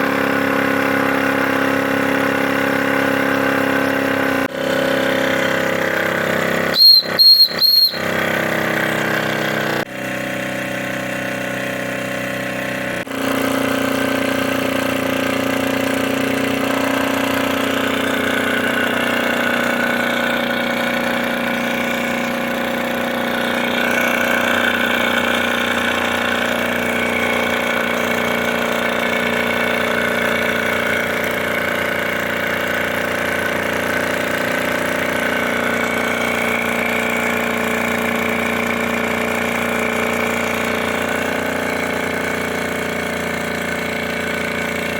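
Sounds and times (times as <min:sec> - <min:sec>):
short high beeps: 0:06.8 - 0:08.0.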